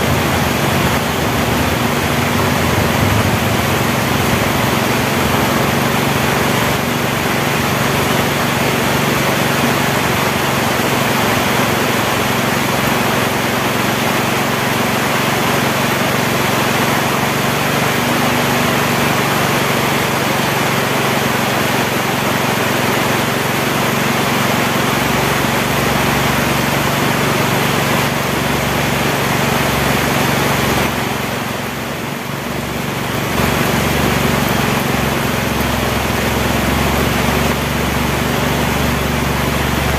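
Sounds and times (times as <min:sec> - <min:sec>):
steady low hum: 0:00.0 - 0:10.0
heavy rain falling: 0:00.0 - 0:39.9.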